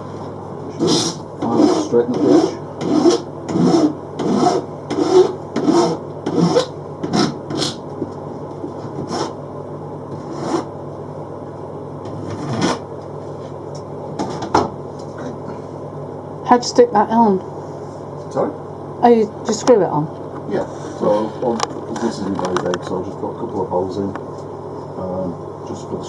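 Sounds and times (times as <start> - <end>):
file rasping on metal: 0.8 - 7.8, 10.1 - 10.7.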